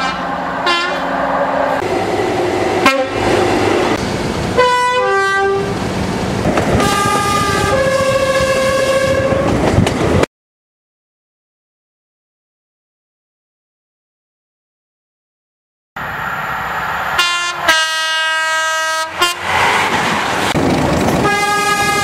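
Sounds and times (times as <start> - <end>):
two-tone train horn: 0.0 - 1.1, 2.8 - 3.2, 4.6 - 5.7, 6.8 - 9.6, 17.2 - 19.4, 21.2 - 22.0
rumble of passing train: 0.0 - 10.3, 16.0 - 22.0.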